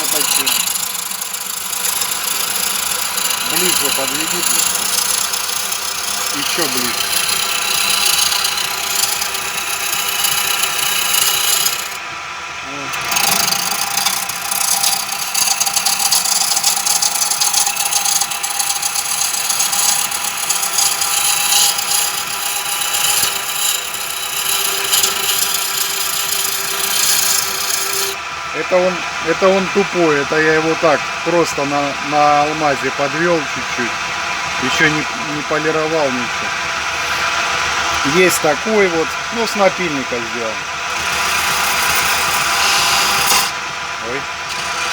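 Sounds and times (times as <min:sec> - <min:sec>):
chisel scraping wood: 0:00.0 - 0:12.0, 0:12.9 - 0:28.2, 0:34.7 - 0:40.1, 0:40.9 - 0:43.6, 0:44.5 - 0:44.9
lathe motor humming: 0:00.0 - 0:44.9.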